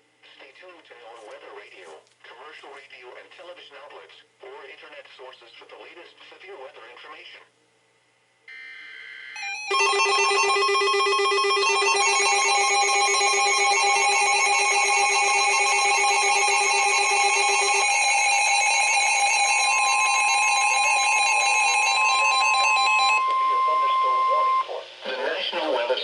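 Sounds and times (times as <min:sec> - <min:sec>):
electronic alert alarm warbling: 0:08.5 - 0:24.7.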